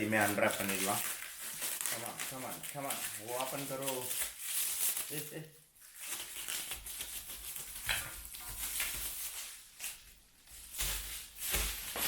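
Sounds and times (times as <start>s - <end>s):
plastic wrapping peeled and torn: 0.0s - 12.0s.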